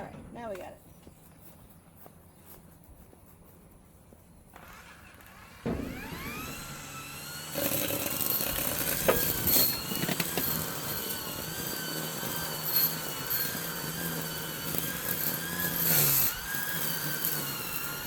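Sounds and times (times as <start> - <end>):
small engine running: 4.5 - 18.0.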